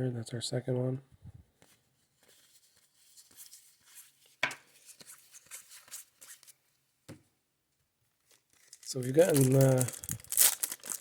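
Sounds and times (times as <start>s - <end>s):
cards rustling: 8.3s - 11.0s.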